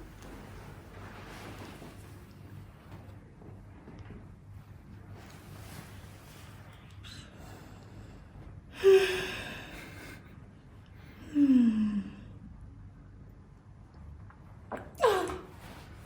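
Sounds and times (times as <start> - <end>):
person sighing: 11.2 - 12.3.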